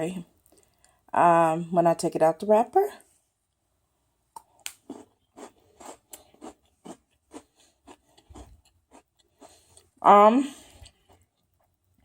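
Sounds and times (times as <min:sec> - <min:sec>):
chewing crunchy biscuit: 0:04.4 - 0:10.0, 0:10.6 - 0:12.0.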